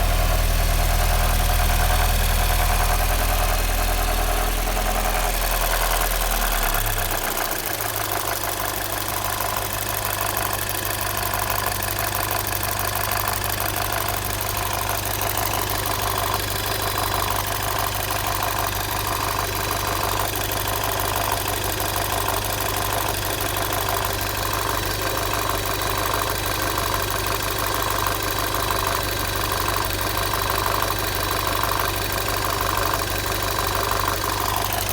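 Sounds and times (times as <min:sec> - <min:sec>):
car engine idling: 0:00.0 - 0:34.9.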